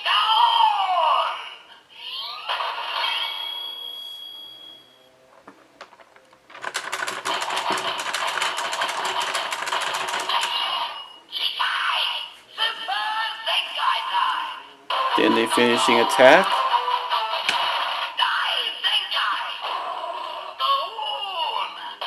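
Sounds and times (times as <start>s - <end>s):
toy fast clicking: 6.0s - 10.6s.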